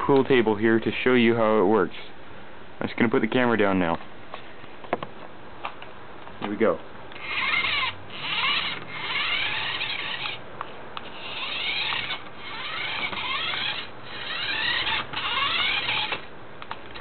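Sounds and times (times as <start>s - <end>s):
toy car motor whirring: 7.2s - 10.4s, 11.0s - 16.3s.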